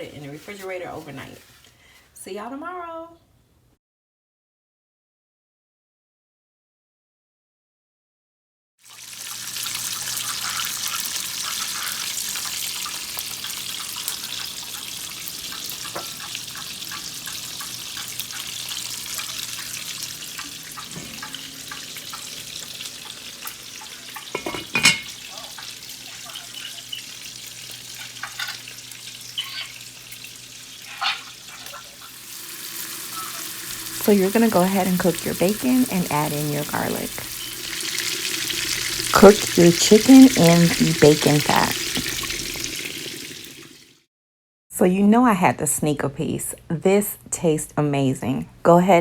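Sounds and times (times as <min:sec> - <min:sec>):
bacon sizzling in a frying pan: 0:08.8 - 0:44.1.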